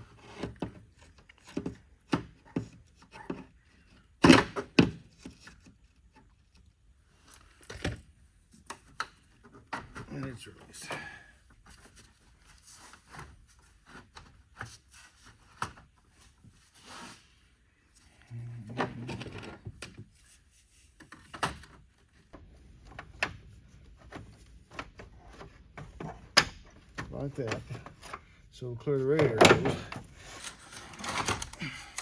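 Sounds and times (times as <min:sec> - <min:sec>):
plastic parts clicking and rubbing: 0:29.1 - 0:32.0.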